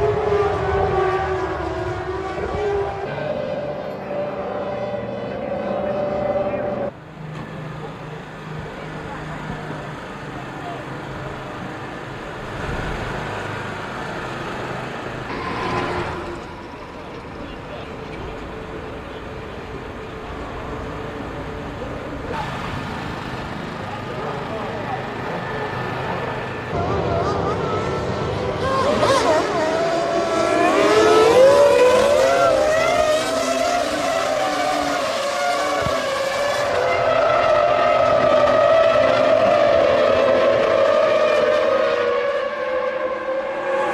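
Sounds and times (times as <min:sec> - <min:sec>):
racing car engines at high revs: 0:00.0 - 0:43.9.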